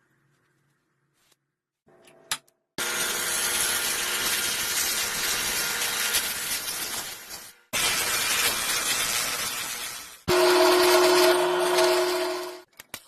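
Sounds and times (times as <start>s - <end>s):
power tool cutting wood: 2.8s - 6.7s, 7.8s - 12.7s.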